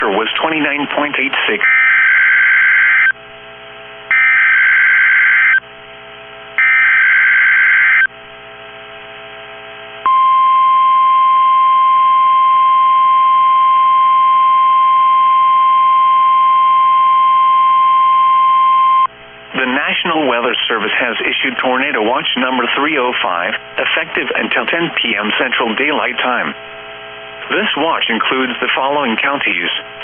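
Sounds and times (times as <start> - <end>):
steady warning alarm tone: 1.6 - 3.2, 4.1 - 5.6, 6.6 - 8.1.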